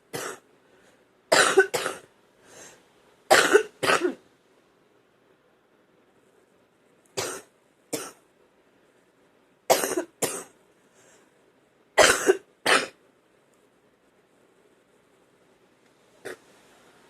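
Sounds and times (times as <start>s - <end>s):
woman coughing wet chest cough: 0.1s - 0.4s, 1.3s - 2.1s, 3.3s - 4.2s, 7.2s - 8.2s, 9.7s - 10.5s, 12.0s - 13.0s.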